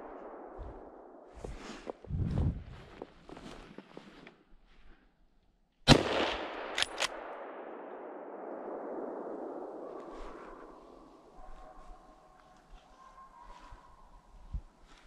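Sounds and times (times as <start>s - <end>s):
rifle shot echoing: 5.9s - 11.3s
sharp clicks: 6.7s - 7.3s.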